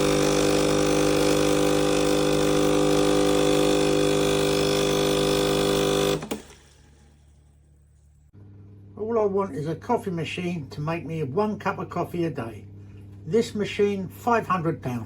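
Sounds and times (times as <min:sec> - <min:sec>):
espresso machine motor hum: 0:00.0 - 0:07.0.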